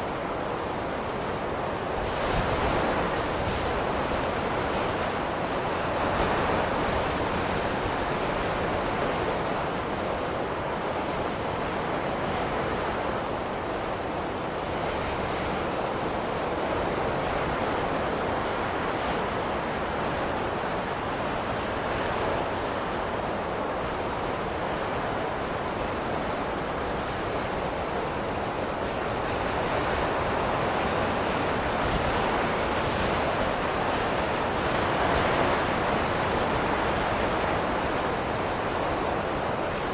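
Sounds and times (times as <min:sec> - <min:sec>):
steady rushing wind: 0:00.0 - 0:39.9.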